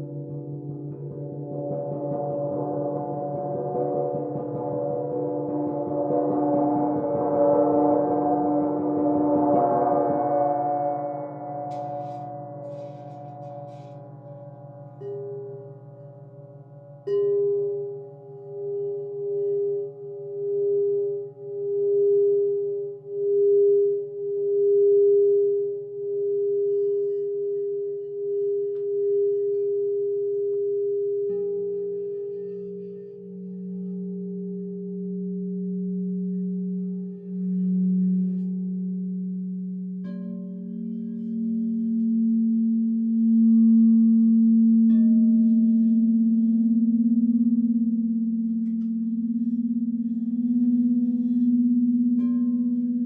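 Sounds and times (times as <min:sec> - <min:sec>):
crystal singing bowl tone: 0:00.0 - 0:53.0
lower singing bowl tone: 0:00.0 - 0:53.0.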